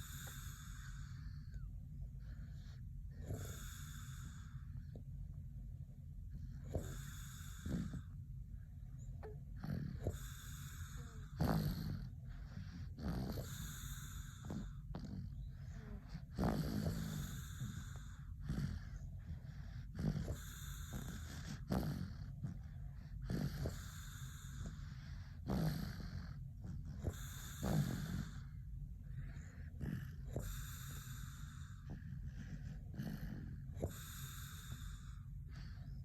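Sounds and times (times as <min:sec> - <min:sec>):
low snores: 0:00.0 - 0:05.0, 0:06.4 - 0:08.2, 0:09.2 - 0:36.0.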